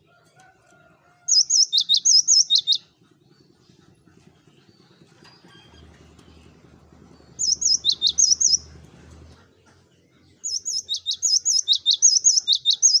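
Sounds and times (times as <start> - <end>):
bird singing high whistled notes: 1.3 - 2.8, 7.4 - 8.7, 10.5 - 13.0.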